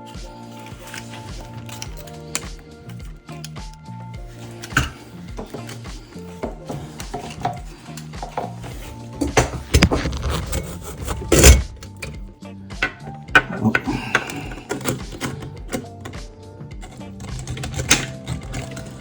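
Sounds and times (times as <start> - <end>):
metal parts clattering: 0.0 - 3.6, 4.3 - 12.2
background music: 0.0 - 19.0
loud metal clunk: 9.2 - 12.2.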